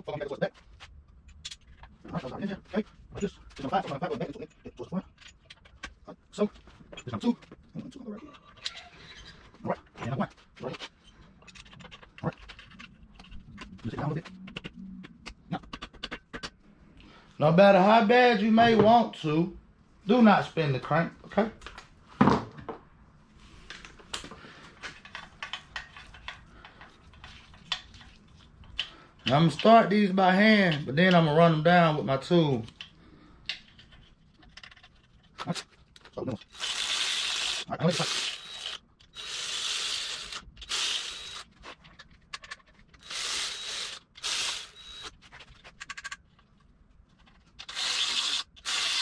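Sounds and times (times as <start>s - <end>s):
metal parts clicking and tapping: 1.2s - 2.0s, 10.0s - 16.6s, 23.8s - 29.7s, 40.1s - 49.0s
ratchet clicks: 47.6s - 49.0s.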